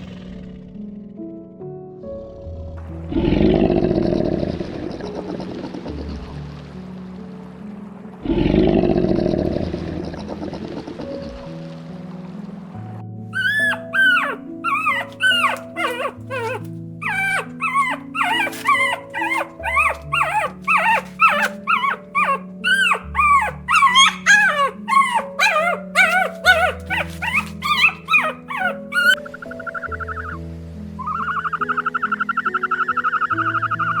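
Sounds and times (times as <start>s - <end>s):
background music: 0.0s - 34.0s
puppies yelping and whimpering: 13.4s - 30.4s.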